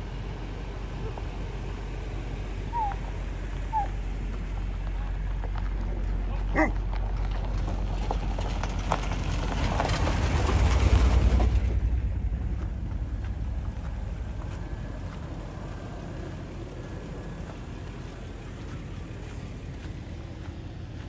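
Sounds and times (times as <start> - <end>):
crackly gravel noise: 0.0 - 21.0
vehicle driving rumble: 0.0 - 21.0
brief squeal: 2.7 - 3.0.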